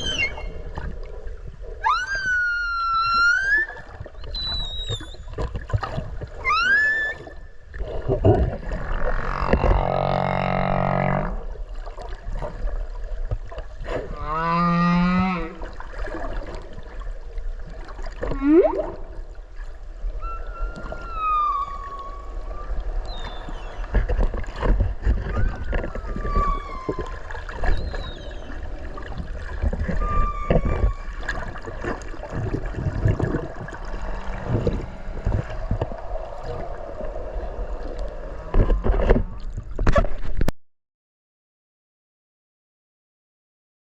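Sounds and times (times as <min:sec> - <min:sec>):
whale calls underwater: 0:00.0 - 0:11.6, 0:13.9 - 0:15.9, 0:18.2 - 0:19.2, 0:19.9 - 0:39.5
underwater crackle: 0:22.0 - 0:40.5.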